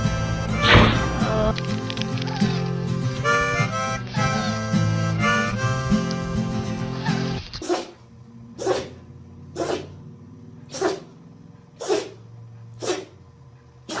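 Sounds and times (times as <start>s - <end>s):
dog sneezing: 7.0s - 8.0s, 8.6s - 9.0s, 9.6s - 10.0s, 10.7s - 11.1s, 11.8s - 12.2s, 12.8s - 13.2s.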